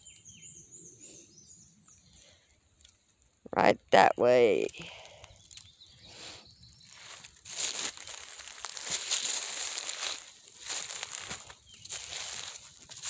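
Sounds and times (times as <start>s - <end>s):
footsteps on dry leaves: 6.1s - 13.0s.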